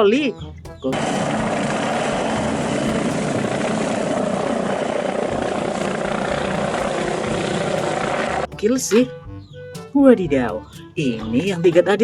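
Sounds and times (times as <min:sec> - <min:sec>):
helicopter rotor and engine: 0:01.0 - 0:08.5.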